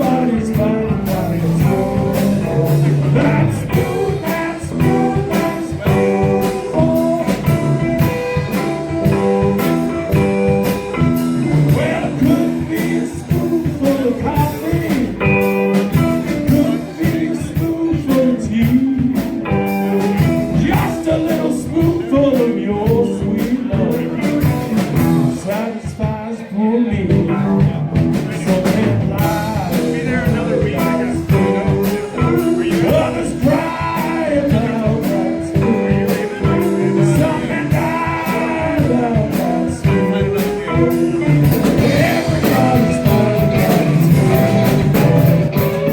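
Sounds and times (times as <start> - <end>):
blues band playing: 0.0 - 45.9
steady drum beat: 0.0 - 45.9
bending guitar lines: 27.3 - 45.9.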